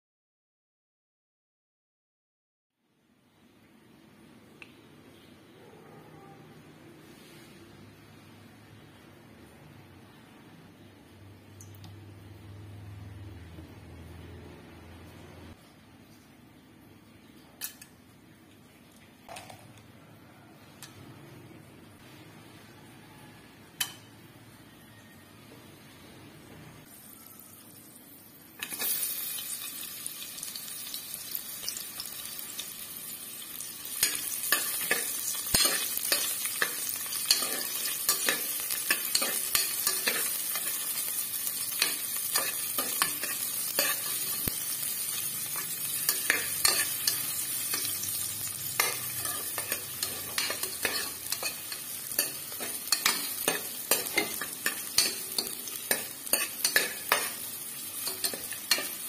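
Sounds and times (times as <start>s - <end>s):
food sizzling in a pan: 26.8s - 59.0s
spoon stirring and knocking pan: 34.0s - 44.7s, 45.5s - 48.1s, 48.7s - 59.0s.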